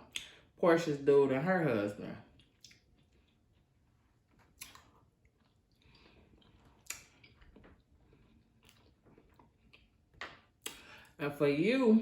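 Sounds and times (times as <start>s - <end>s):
chewing and mouth sounds: 2.3s - 11.1s.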